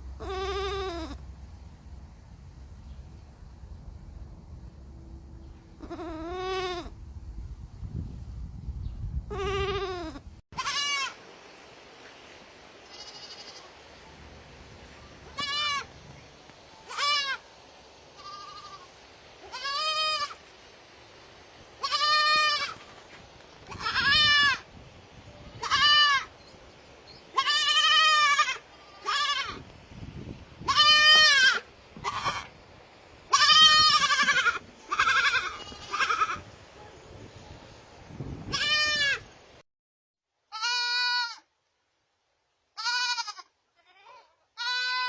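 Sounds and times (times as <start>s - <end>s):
baby goat bleating: 0.2s - 1.2s, 5.8s - 7.0s, 9.3s - 11.2s, 12.9s - 13.7s, 15.3s - 15.9s, 16.9s - 17.4s, 18.2s - 20.4s, 21.8s - 22.8s, 23.7s - 24.6s, 25.6s - 26.3s, 27.3s - 29.6s, 30.6s - 32.5s, 33.3s - 36.5s, 38.5s - 39.3s, 40.5s - 41.5s, 42.8s - 45.0s.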